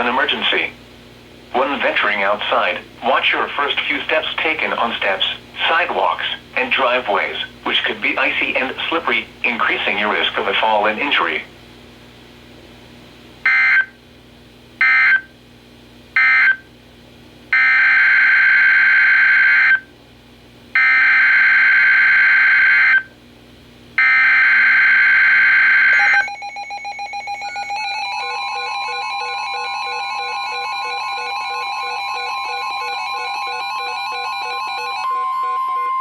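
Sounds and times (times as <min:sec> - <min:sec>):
weather radio alert alarms: 0:13.5 - 0:13.9, 0:24.0 - 0:36.0.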